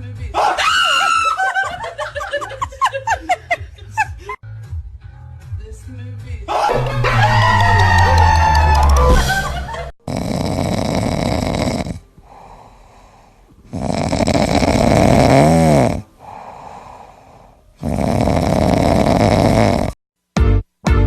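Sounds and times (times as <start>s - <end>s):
loud snoring: 10.0s - 20.0s.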